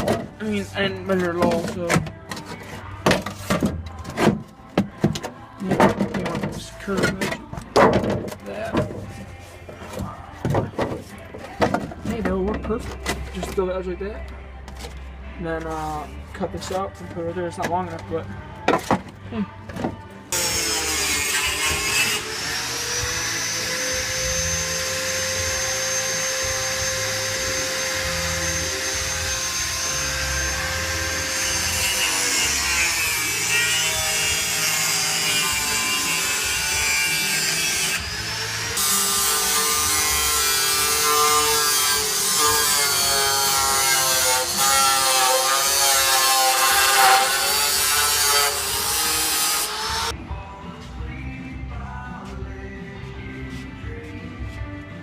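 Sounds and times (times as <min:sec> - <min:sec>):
power tool cutting steel: 0:20.3 - 0:50.1.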